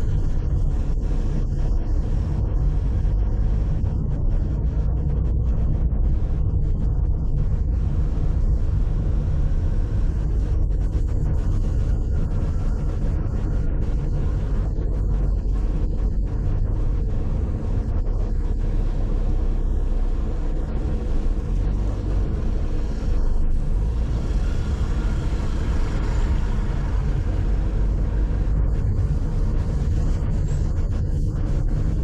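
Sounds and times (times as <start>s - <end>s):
car engine and road rumble: 0.0s - 32.0s
tyre hiss of passing traffic: 22.9s - 29.5s.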